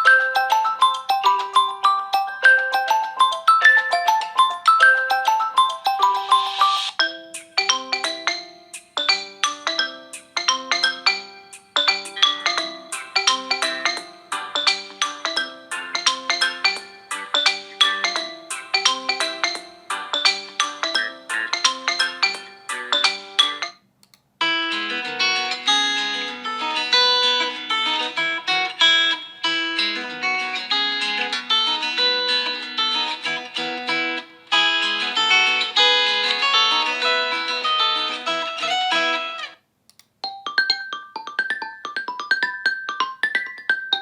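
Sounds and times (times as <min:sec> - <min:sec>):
fuller ringtone melody: 0:00.0 - 0:23.8, 0:24.4 - 0:39.6, 0:40.2 - 0:44.0
ringtone of sharply struck notes: 0:00.0 - 0:23.8, 0:40.2 - 0:44.0.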